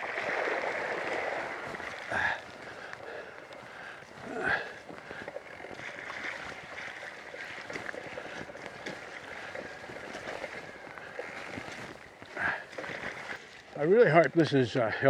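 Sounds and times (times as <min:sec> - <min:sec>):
bike tyres on wet dirt: 0:00.0 - 0:14.6.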